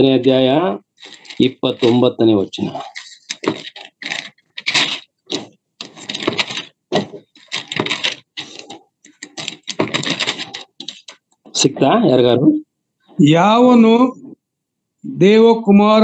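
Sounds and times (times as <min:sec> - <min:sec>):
pages turning: 0:01.0 - 0:11.2.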